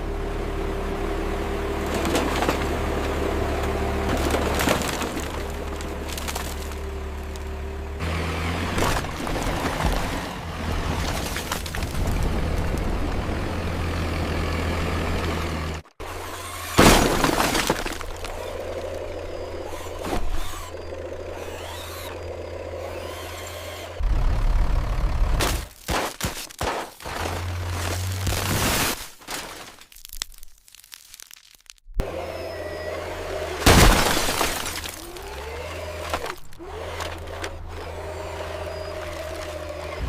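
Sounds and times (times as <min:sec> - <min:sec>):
model cars crashing and breaking: 0:01.8 - 0:03.1, 0:04.0 - 0:07.2, 0:08.5 - 0:12.9, 0:16.0 - 0:22.2, 0:25.3 - 0:30.3, 0:32.7 - 0:40.0
crunching and scraping: 0:01.8 - 0:07.6, 0:08.6 - 0:13.2, 0:16.1 - 0:22.0, 0:25.4 - 0:32.0, 0:33.6 - 0:40.0.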